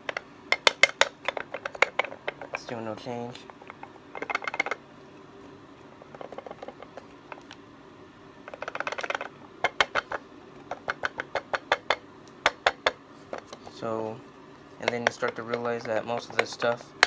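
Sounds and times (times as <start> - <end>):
wooden puzzle box rattling and clicking: 0.0 - 2.8, 3.5 - 4.8, 6.0 - 7.6, 8.5 - 13.8, 14.8 - 17.0.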